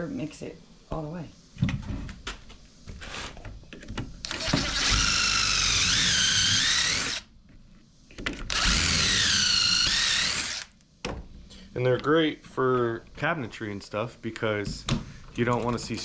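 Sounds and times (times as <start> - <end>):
power drill whining: 4.3 - 7.2, 8.5 - 10.7.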